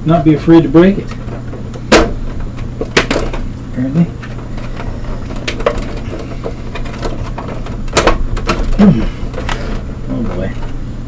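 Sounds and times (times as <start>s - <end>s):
plastic creaking and cracking: 0.2s - 11.0s
sharp plastic snaps: 1.7s - 3.5s.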